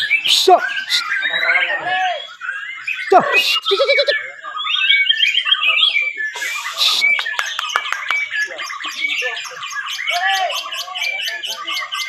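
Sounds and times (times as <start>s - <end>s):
birds singing in chorus: 0.0s - 12.0s
brief harsh hiss: 6.4s - 6.9s.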